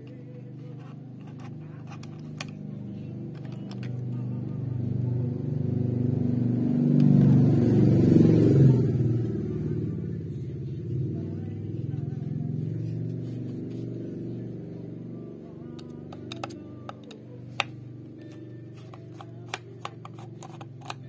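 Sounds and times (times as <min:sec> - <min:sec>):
small parts clicking and tapping: 0:00.0 - 0:02.6, 0:03.3 - 0:04.1, 0:15.8 - 0:17.7, 0:18.8 - 0:21.0
vehicle engine running: 0:00.0 - 0:21.0.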